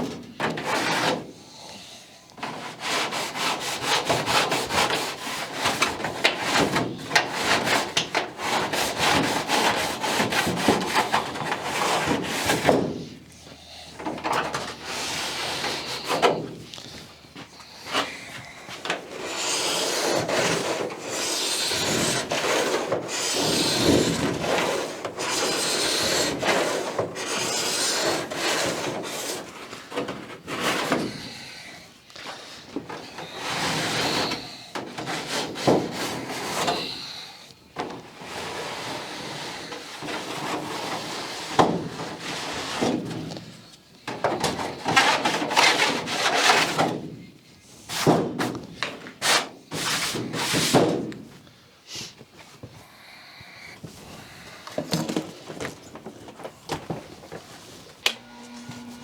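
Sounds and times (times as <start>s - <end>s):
hand file rasping on metal: 2.4s - 12.8s, 13.9s - 16.4s, 18.8s - 29.5s.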